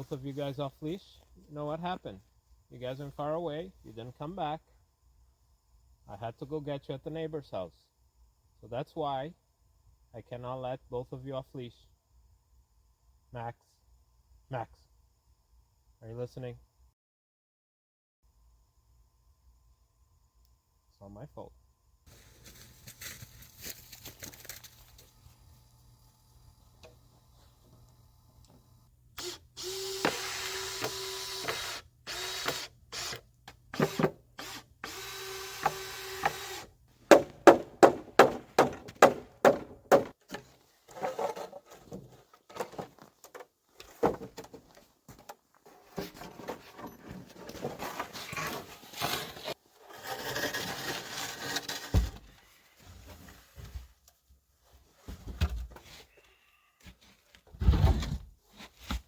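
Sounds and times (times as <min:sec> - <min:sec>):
power drill driving screws: 0:29.2 - 0:36.7.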